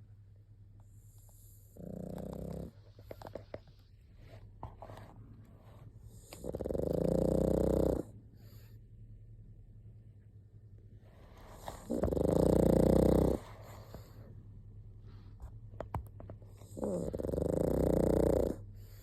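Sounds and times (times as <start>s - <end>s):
quiet breathing noises: 0.8s - 9.2s, 10.8s - 15.7s, 16.4s - 19.0s
dog snoring: 0.9s - 3.4s, 6.1s - 8.8s, 11.4s - 14.2s, 16.5s - 19.0s.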